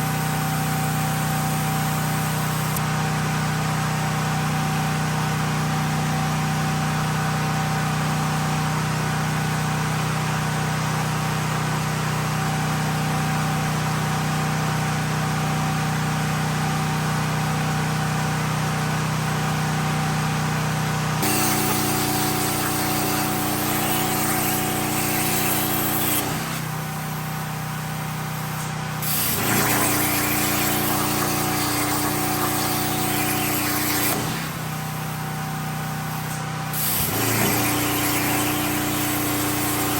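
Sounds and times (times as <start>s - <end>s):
plasma torch hissing: 0.0s - 2.8s, 21.2s - 39.9s
generator engine humming: 19.2s - 33.5s.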